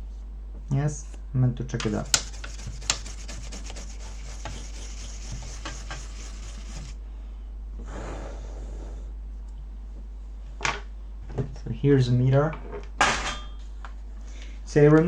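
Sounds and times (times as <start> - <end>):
steady low hum: 0.0 - 11.2
scratchy rubbing handling noise: 1.8 - 7.0.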